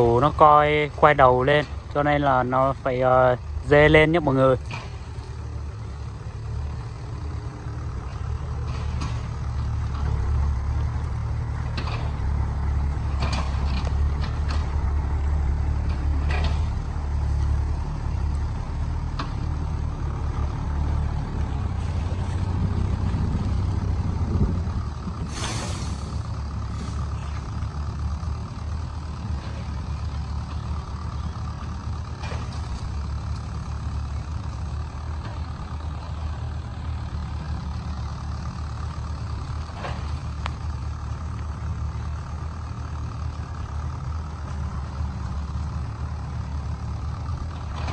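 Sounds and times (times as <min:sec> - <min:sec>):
diesel truck engine working hard: 0:00.0 - 0:47.9
air-brake hiss: 0:25.2 - 0:27.6.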